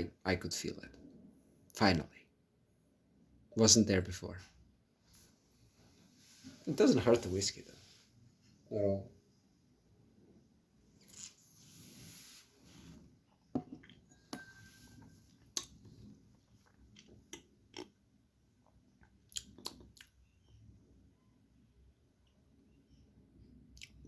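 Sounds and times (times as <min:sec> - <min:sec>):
lip smacks and tongue clicks: 0:15.5 - 0:15.9, 0:16.6 - 0:17.9, 0:19.0 - 0:20.2, 0:23.8 - 0:24.0.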